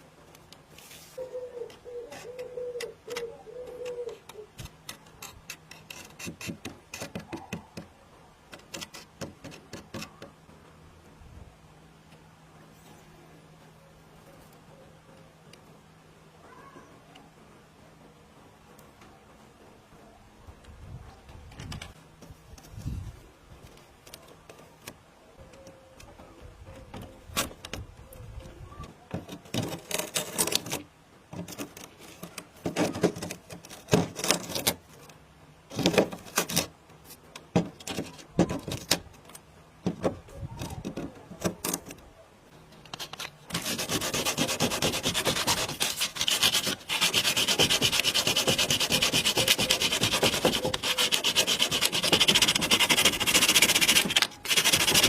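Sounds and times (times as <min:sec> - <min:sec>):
sanding on particle board: 0:43.0 - 0:55.0.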